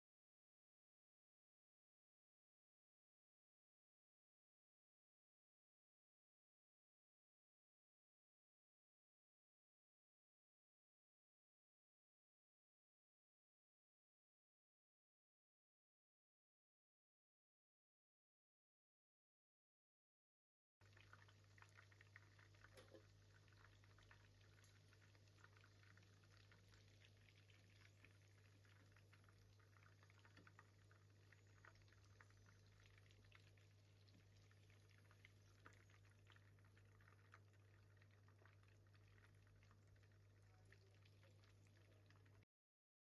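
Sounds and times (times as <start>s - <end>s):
chicken frying in oil: 20.8s - 42.5s.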